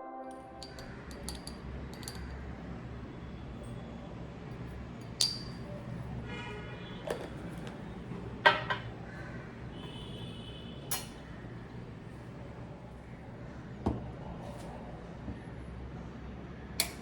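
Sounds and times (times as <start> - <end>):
low steady hum: 0.0 - 3.7
dishes and glassware clinking: 0.6 - 2.4, 5.1 - 5.7, 8.5 - 8.9, 10.9 - 11.3.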